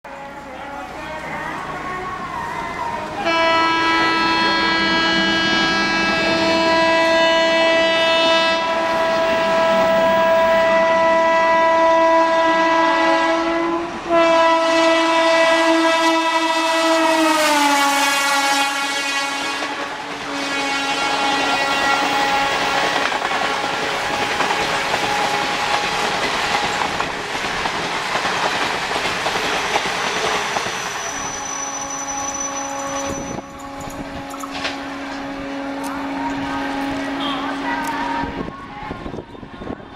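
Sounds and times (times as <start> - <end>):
train coaches rushing past: 0.1 - 39.9
locomotive horn blasts: 3.2 - 26.7, 31.0 - 38.5.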